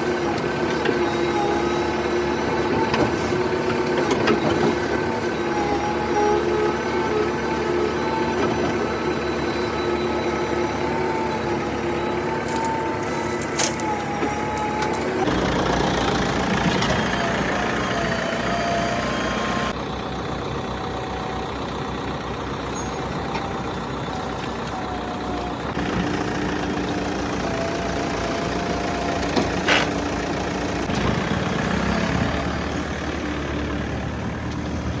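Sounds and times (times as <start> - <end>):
diesel engines running: 0.0 - 35.0.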